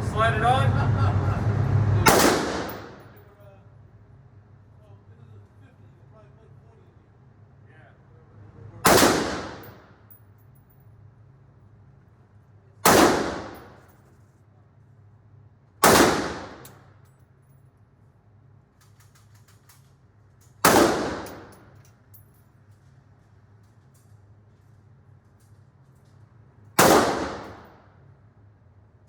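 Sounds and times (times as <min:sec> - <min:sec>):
gunshots with long echo: 0:02.1 - 0:03.1, 0:08.9 - 0:09.8, 0:12.9 - 0:13.8, 0:15.8 - 0:16.6, 0:20.6 - 0:21.5, 0:26.8 - 0:27.8.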